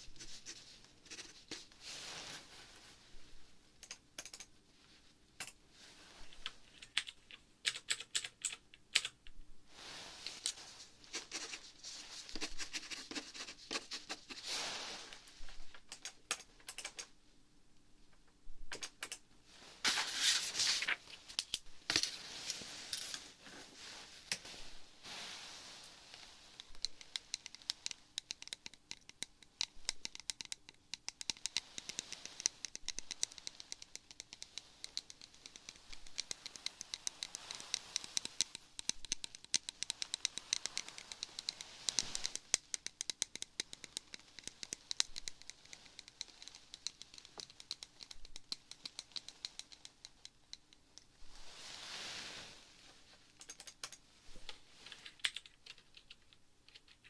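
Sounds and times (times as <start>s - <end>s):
typing on computer keyboard: 3.8s - 4.5s, 6.7s - 9.4s, 15.8s - 17.1s, 18.7s - 19.2s, 26.8s - 50.8s, 53.4s - 54.0s, 55.0s - 57.0s.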